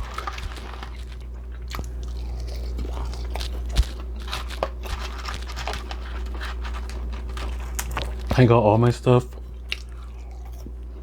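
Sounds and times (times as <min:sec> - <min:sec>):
person chewing and crunching: 0:00.0 - 0:11.0
steady low hum: 0:00.0 - 0:11.0.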